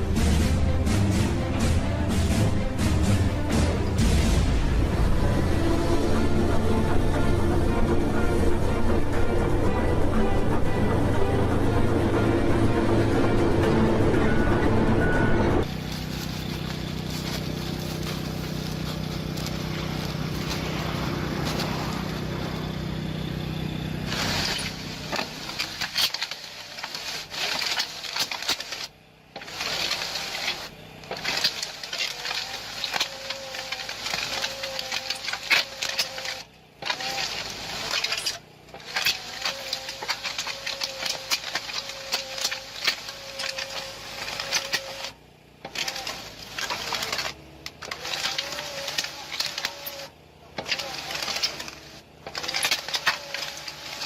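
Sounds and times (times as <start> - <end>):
machine engine humming: 0.0 - 54.0
steady whine: 0.0 - 54.0
clattering and scraping: 24.1 - 54.0.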